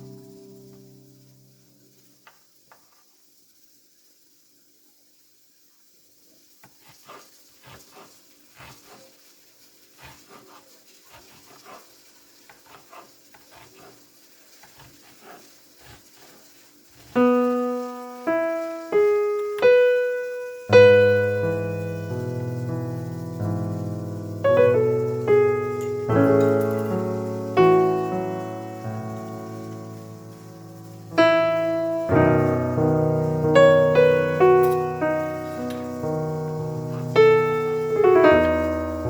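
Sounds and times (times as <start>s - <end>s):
piano notes and chord: 0.0s - 1.7s, 17.2s - 39.0s.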